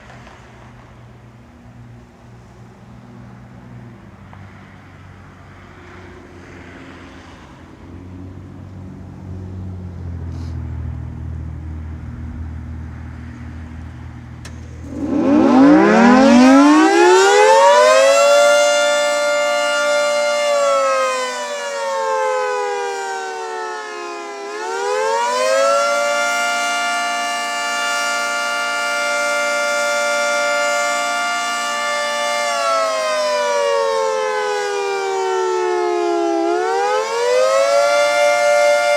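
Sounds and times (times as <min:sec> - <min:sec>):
warning siren wailing: 0:14.6 - 0:38.9.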